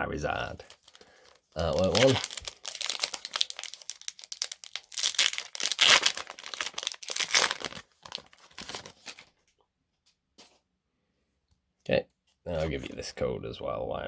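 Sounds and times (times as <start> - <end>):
foil wrapper crinkling and tearing: 0.4 - 9.3.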